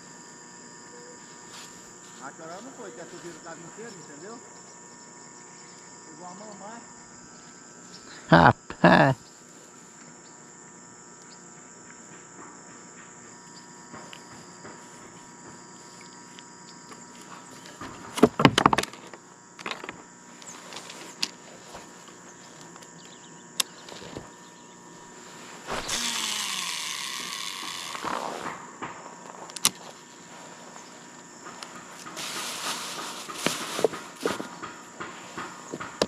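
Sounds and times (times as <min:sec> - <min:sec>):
night insects chirring: 0:00.0 - 0:36.0
rustling and hissing: 0:01.0 - 0:04.5, 0:20.3 - 0:23.0, 0:23.6 - 0:36.0.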